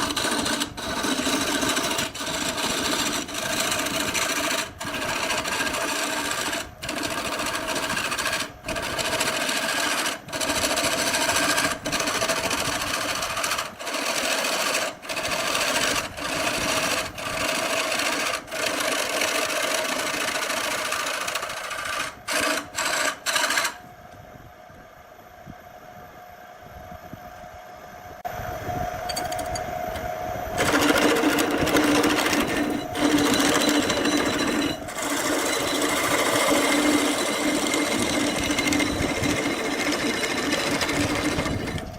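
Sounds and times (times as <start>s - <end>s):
power tool cutting wood: 30.6s - 41.9s.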